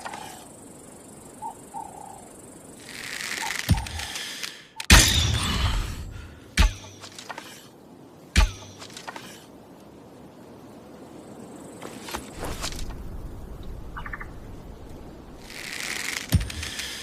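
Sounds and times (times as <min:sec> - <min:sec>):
sharp arrow hit: 0:04.9 - 0:07.0.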